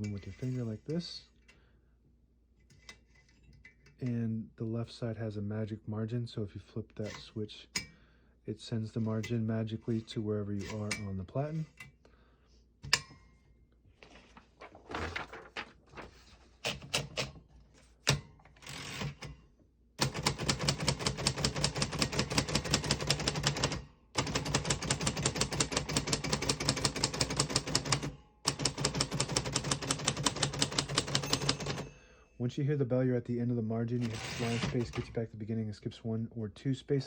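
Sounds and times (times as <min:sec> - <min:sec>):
typewriter keys typing: 0:20.0 - 0:31.9, 0:34.0 - 0:35.1.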